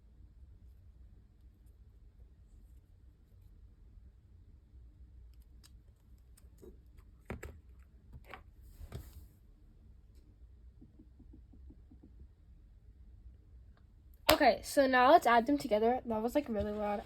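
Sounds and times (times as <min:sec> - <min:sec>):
faint clicks and taps: 0:10.2 - 0:12.4
soft crinkly rustle: 0:16.4 - 0:17.0.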